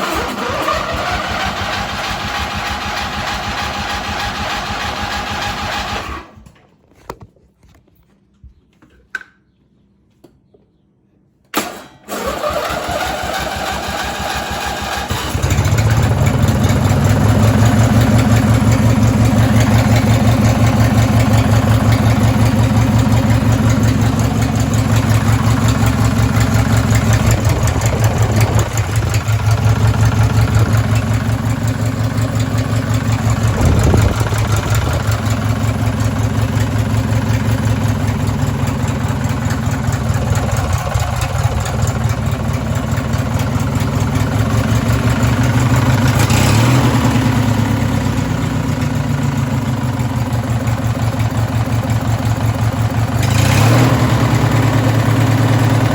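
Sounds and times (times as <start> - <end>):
engine knocking: 0.0 - 6.2, 12.2 - 55.9
lawn mower engine idling: 0.0 - 6.6, 11.6 - 55.9.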